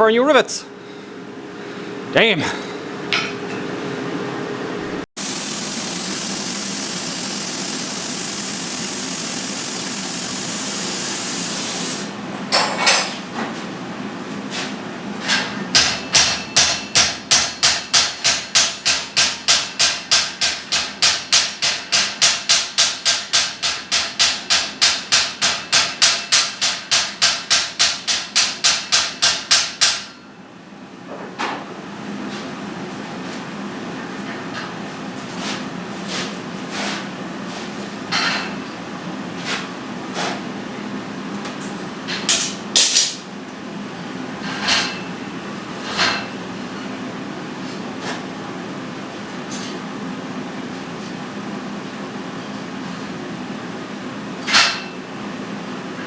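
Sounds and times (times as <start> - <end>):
steady hiss: 5.2 - 12.1.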